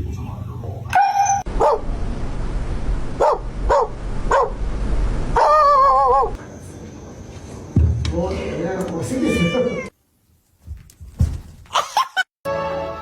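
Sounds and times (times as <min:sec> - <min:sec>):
dog barking: 0:01.0 - 0:01.8, 0:03.2 - 0:04.6
dog howling: 0:05.4 - 0:06.4.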